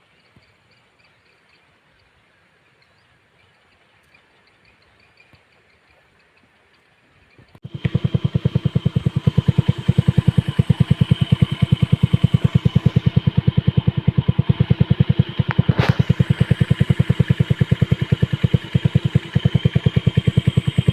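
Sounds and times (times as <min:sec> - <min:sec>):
small engine idling: 0:07.3 - 0:20.9.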